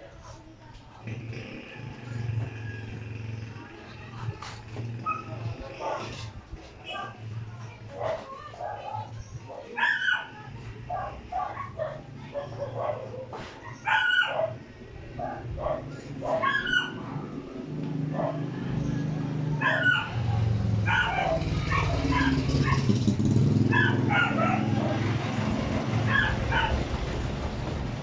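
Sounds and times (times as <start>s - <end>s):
dog barking and yipping: 5.0s - 7.2s, 7.9s - 14.6s, 15.2s - 22.9s, 23.6s - 25.2s, 25.9s - 26.9s.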